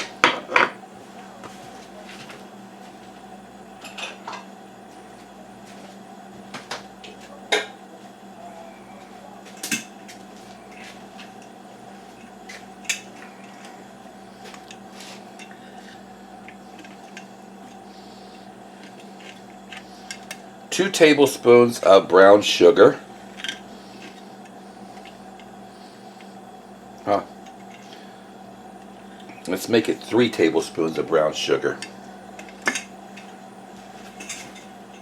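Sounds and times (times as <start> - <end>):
faint hum: 0.0 - 35.0
utensils and dishes clinking: 9.5 - 10.0, 31.8 - 33.3, 34.1 - 35.0.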